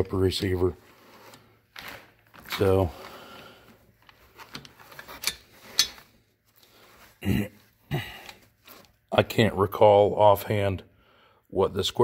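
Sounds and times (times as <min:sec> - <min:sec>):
man's short vocal sounds: 0:07.2 - 0:08.3.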